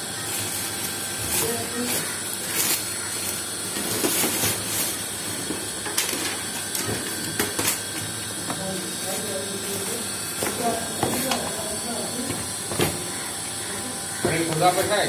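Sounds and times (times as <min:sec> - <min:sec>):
packaging clicks and rustles: 0:00.3 - 0:08.2, 0:09.6 - 0:11.6.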